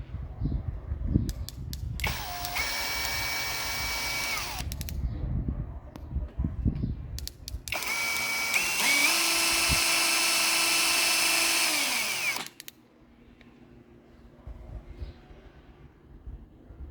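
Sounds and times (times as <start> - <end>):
drill clicks: 1.7 - 5.0, 7.2 - 12.7
cordless drill motor whining: 2.0 - 4.7, 7.7 - 12.7.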